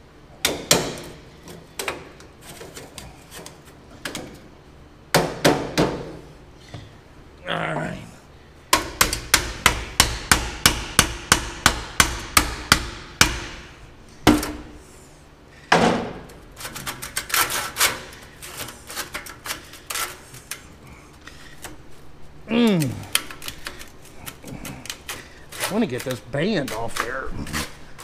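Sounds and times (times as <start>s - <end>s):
hammer striking chisel on metal: 8.7s - 13.6s.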